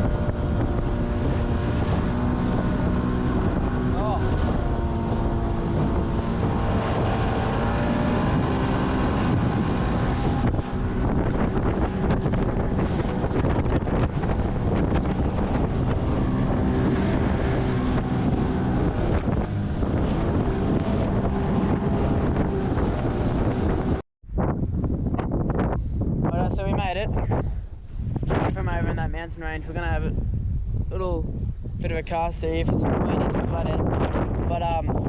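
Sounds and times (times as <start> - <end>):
hull slapping waves: 0.0 - 24.0
outboard motor running: 0.0 - 24.0
wind buffeting microphone: 0.0 - 35.0.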